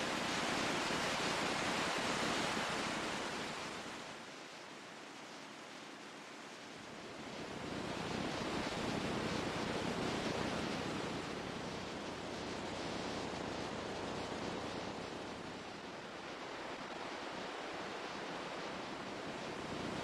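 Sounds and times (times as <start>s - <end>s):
ocean wave washing: 0.0s - 12.1s.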